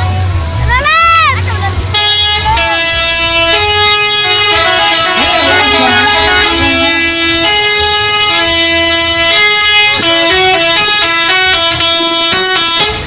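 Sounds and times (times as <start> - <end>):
multi-tone bus horn tune: 1.9 - 13.0.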